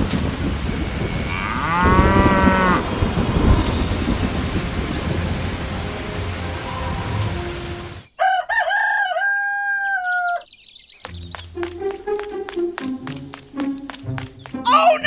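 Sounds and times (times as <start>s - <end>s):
steady rain: 0.0s - 8.1s
rooster crowing: 8.2s - 10.5s.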